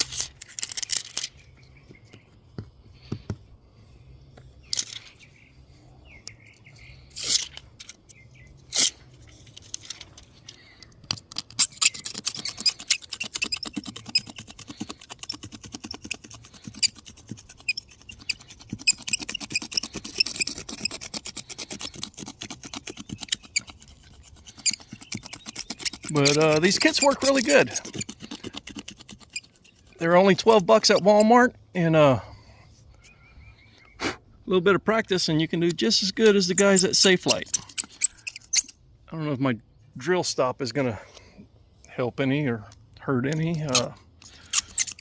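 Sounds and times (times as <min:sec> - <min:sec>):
scraping on windshield glass: 0:08.6 - 0:31.4, 0:35.7 - 0:38.7, 0:43.5 - 0:45.0.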